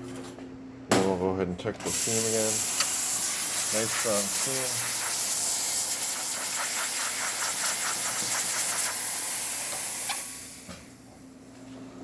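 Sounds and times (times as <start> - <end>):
steam wand hissing: 1.9 - 11.1.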